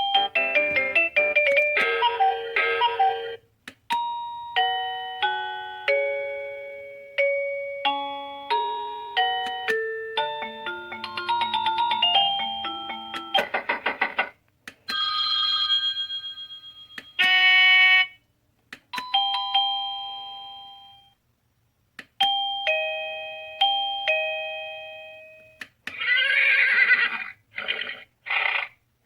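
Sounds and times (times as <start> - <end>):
doorbell chime tunes: 0.0 - 13.4, 14.9 - 17.2, 19.0 - 21.2, 22.2 - 25.6
doorbell switch clicks: 9.4 - 9.8, 18.8 - 19.5.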